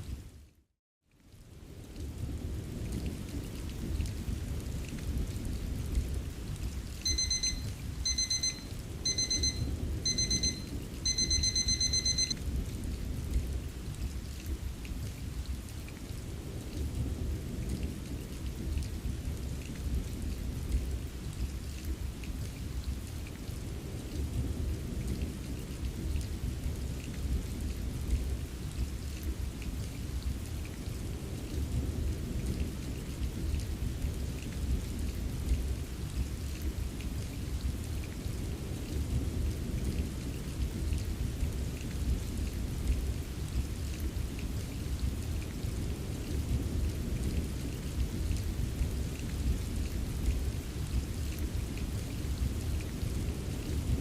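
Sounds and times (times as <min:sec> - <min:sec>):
steady rain: 0:00.0 - 0:54.0
digital timer alarm beeping: 0:07.0 - 0:12.4.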